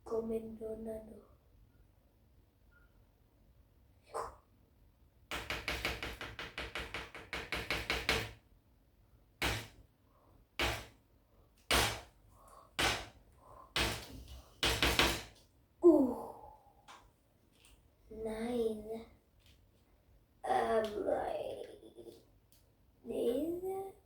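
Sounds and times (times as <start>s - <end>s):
sharp knocks: 5.3s - 8.4s, 9.4s - 9.8s, 10.6s - 11.0s, 11.7s - 12.1s, 12.8s - 13.2s, 13.8s - 15.4s.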